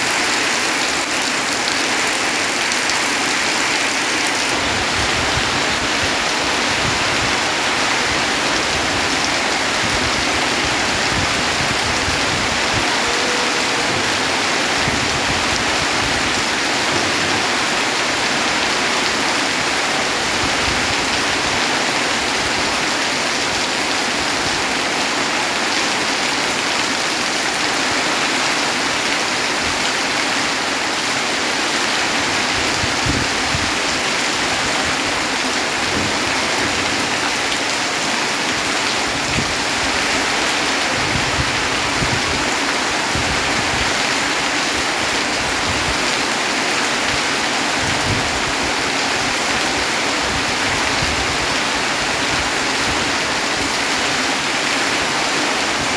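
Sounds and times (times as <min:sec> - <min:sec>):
heavy rain falling: 0:00.0 - 0:55.9.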